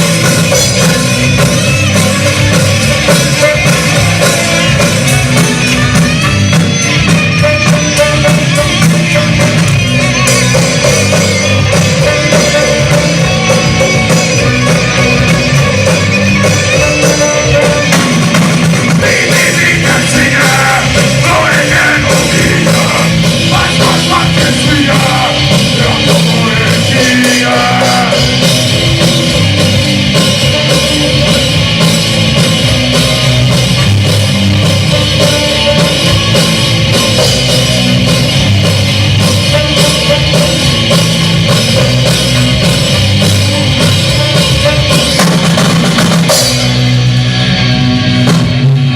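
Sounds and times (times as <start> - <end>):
rock band playing loud music: 0.0 - 48.9
person singing: 19.0 - 28.6.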